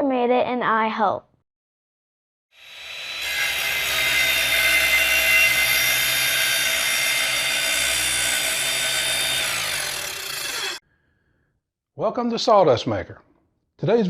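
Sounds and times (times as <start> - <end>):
electric power tool motor running: 2.6 - 10.8.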